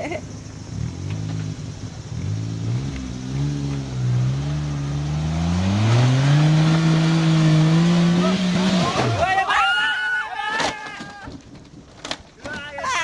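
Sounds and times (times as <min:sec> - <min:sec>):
engine revving under load: 0:00.7 - 0:09.2.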